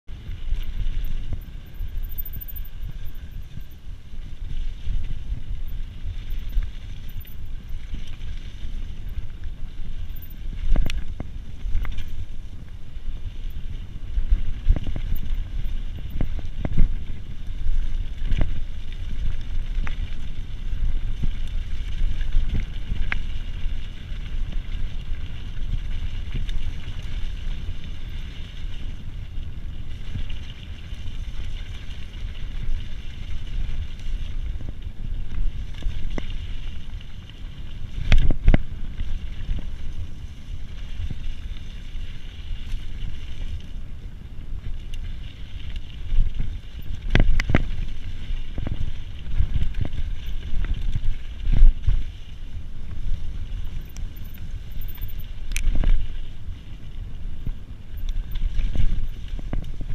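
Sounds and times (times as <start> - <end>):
wind rumbling on microphone: 0.0 - 59.9
bike knocking and rattling: 0.1 - 59.9.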